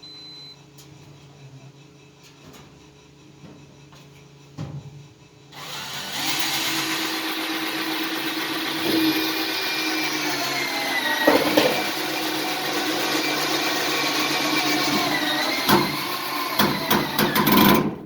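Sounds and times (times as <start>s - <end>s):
electric grinder running: 5.6s - 18.0s
clunk: 11.2s - 12.0s.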